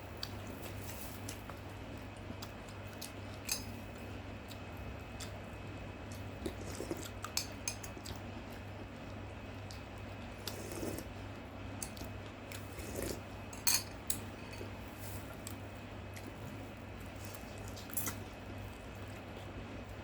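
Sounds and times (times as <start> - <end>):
steady low hum: 0.0 - 20.0
cutlery clinking on a plate: 13.6 - 14.7.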